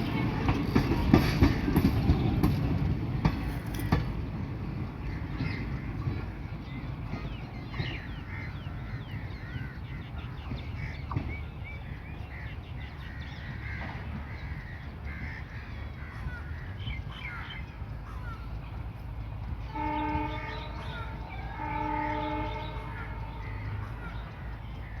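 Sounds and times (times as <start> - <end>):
birds chirping: 0.0 - 25.0
train horn blasts: 19.6 - 24.2.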